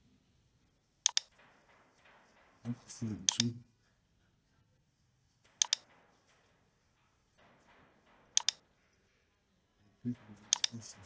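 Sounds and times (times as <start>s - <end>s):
mouse button double-clicks: 1.1s - 1.3s.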